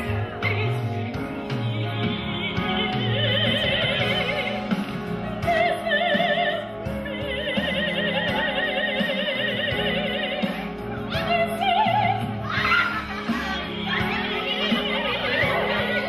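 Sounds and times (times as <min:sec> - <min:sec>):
operatic singing: 0:00.0 - 0:16.0.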